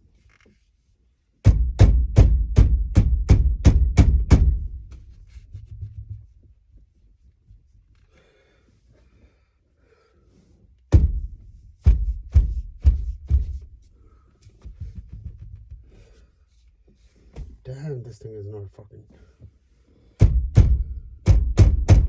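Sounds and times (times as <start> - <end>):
steering wheel thumps: 10.9 - 13.8.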